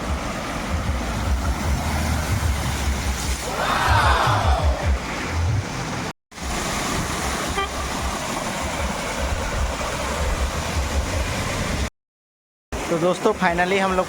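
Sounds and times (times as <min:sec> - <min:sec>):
road and wind noise: 0:00.0 - 0:11.9
car horn toot: 0:07.4 - 0:07.8.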